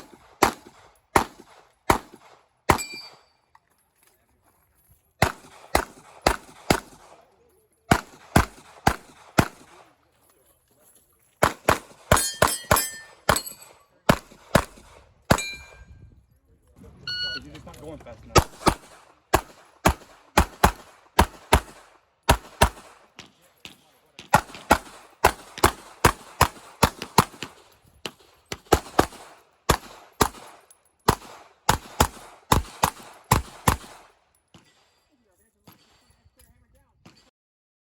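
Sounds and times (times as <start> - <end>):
pistol shots with echoes: 0.0 - 3.2, 5.2 - 7.3, 7.9 - 10.0, 11.4 - 15.8, 18.4 - 34.9.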